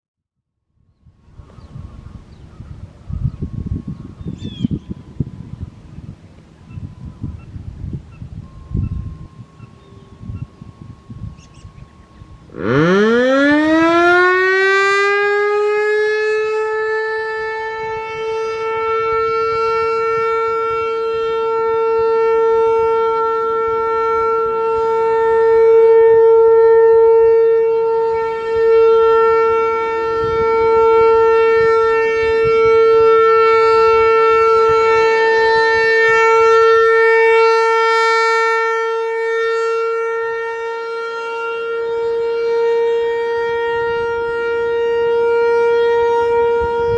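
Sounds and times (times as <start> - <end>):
warning siren rising tone: 0.7 - 46.9.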